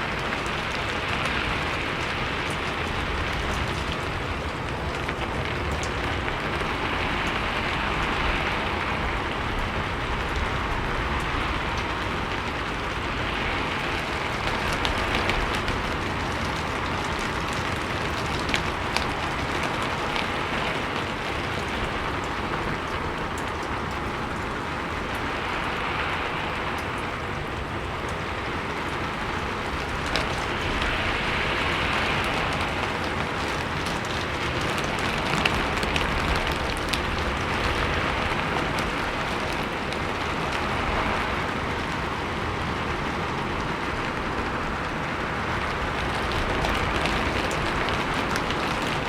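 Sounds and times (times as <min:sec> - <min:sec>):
rain on a rooftop: 0:00.0 - 0:49.0.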